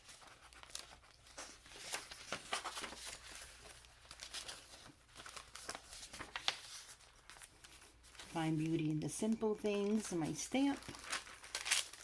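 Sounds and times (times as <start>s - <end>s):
paper pages rustling and crinkling: 0.0s - 12.0s.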